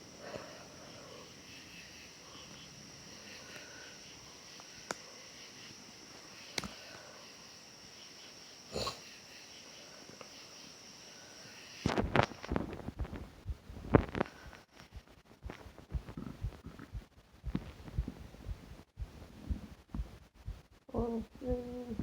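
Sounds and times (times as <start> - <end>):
faint nasal breathing: 0.0 - 7.6, 14.0 - 19.8
sharp clicks: 6.5 - 6.8.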